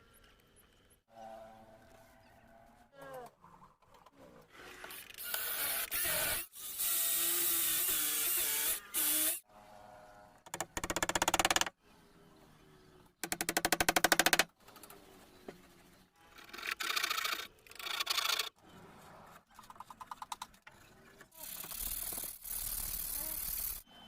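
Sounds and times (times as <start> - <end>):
woodworking tools cutting wood: 4.5 - 9.4.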